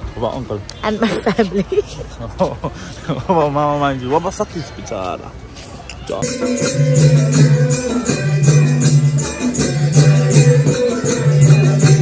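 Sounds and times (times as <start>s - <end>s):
music with steady beat and bass: 6.2s - 12.0s.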